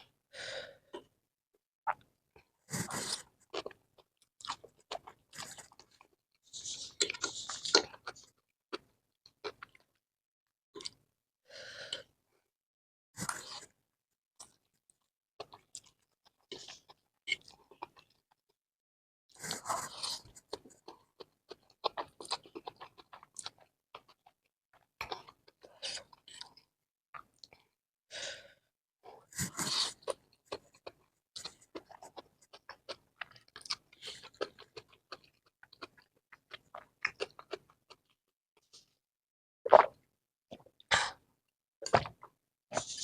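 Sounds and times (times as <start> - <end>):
person chewing noodles: 1.9 - 6.1, 6.9 - 10.0, 15.4 - 18.3, 19.4 - 27.7, 29.4 - 38.2.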